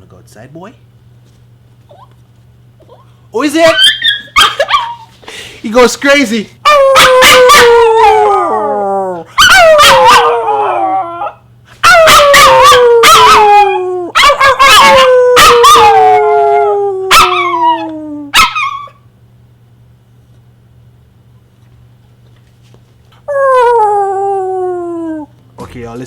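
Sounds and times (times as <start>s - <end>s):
dog howling and yipping: 3.7s - 5.1s, 6.6s - 19.0s, 23.3s - 25.3s.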